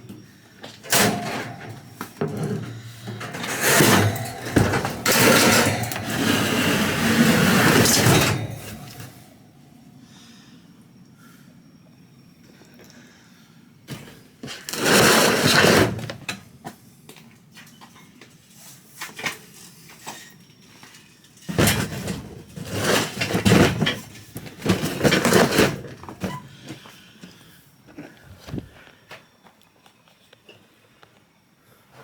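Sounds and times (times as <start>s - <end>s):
scrap scraping and clattering: 0.8s - 9.3s, 13.9s - 16.2s, 21.3s - 26.8s.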